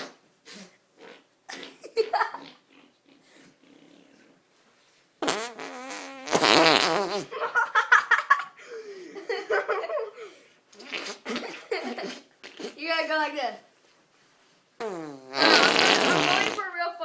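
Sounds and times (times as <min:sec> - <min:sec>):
child blowing mouth fart: 0:00.0 - 0:02.7, 0:05.2 - 0:07.5, 0:10.7 - 0:12.8, 0:14.8 - 0:16.7.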